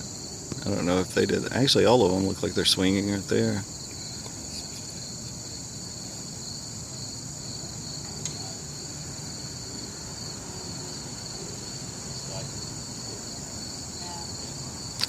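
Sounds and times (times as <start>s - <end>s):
insects chirring: 0.0s - 15.0s.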